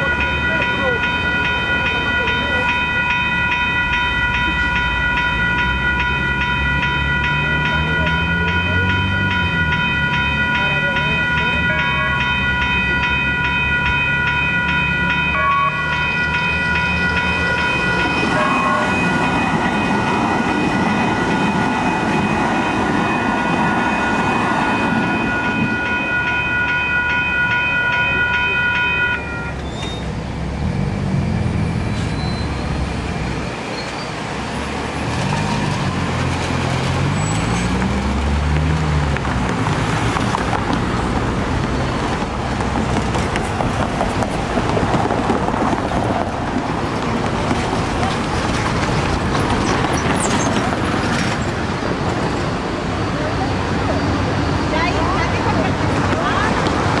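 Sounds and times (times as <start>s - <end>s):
crossing warning bells ringing: 0.0s - 57.0s
light-rail train passing: 0.0s - 57.0s
road vehicles pulling away: 29.4s - 57.0s.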